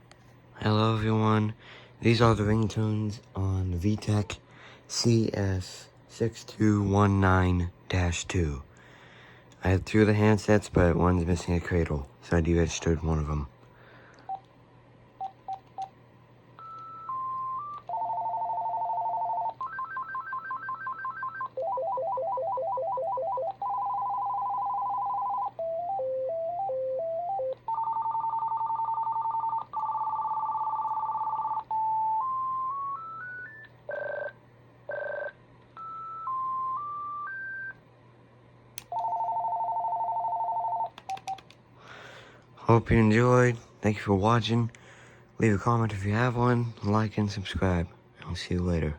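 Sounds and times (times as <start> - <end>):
phone ringtone tunes and trills: 16.6 - 34.3, 34.9 - 37.8.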